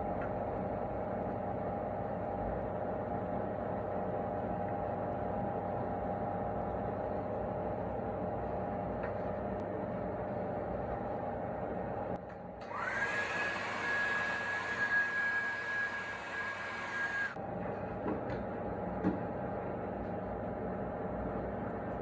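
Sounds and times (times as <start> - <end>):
electric motor humming: 12.6 - 17.4.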